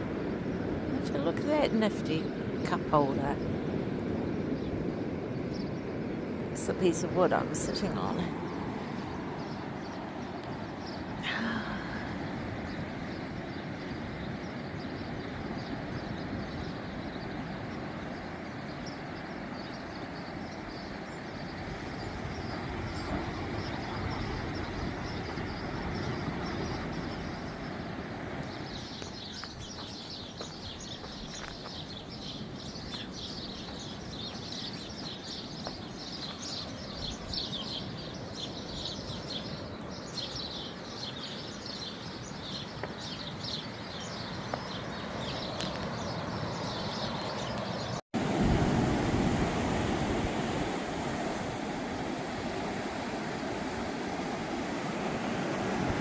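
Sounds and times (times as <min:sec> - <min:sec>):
surf rushing on beach: 0:00.0 - 0:56.0
small birds chirping: 0:05.4 - 0:05.8, 0:06.6 - 0:48.0.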